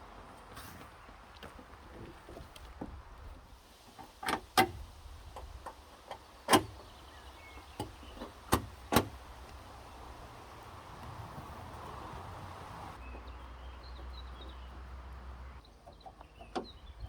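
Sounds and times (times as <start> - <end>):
car door panel clicking into place: 7.8 - 9.2.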